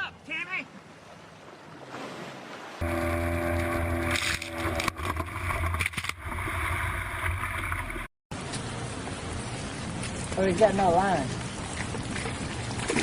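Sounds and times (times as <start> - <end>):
water noise: 0.0 - 13.0
boat motor running: 2.8 - 8.1.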